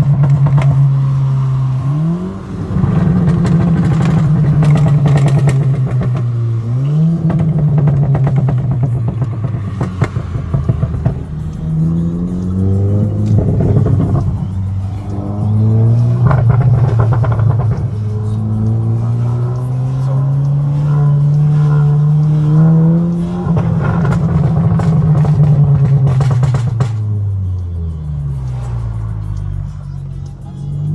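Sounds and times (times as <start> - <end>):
exhaust pops and crackles: 0.0 - 1.0, 2.8 - 6.4, 7.2 - 12.0, 13.1 - 20.1, 23.0 - 27.1
car engine accelerating: 0.0 - 30.9.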